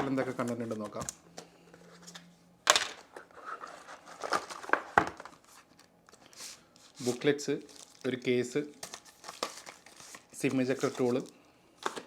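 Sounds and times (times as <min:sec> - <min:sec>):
rustling paper and packaging: 0:03.2 - 0:12.0.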